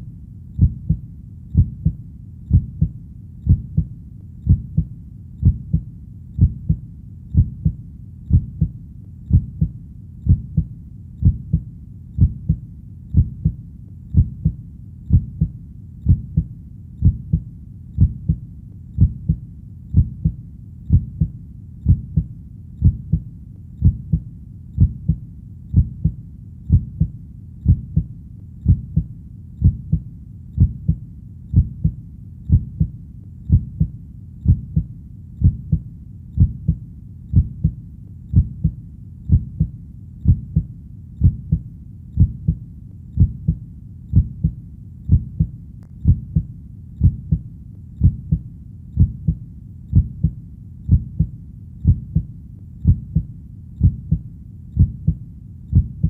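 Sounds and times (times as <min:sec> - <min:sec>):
faint low hum: 0:00.0 - 0:56.0
heartbeat double thump: 0:00.6 - 0:01.0, 0:01.6 - 0:02.9, 0:03.5 - 0:05.8, 0:06.4 - 0:06.8, 0:07.4 - 0:09.7, 0:10.3 - 0:11.6, 0:12.2 - 0:12.6, 0:13.2 - 0:15.5, 0:16.1 - 0:17.4, 0:19.0 - 0:19.4, 0:20.0 - 0:24.2, 0:24.8 - 0:30.0, 0:30.6 - 0:32.9, 0:33.5 - 0:35.8, 0:36.4 - 0:41.6, 0:42.2 - 0:42.6, 0:43.2 - 0:47.4, 0:48.0 - 0:48.4, 0:49.0 - 0:56.0.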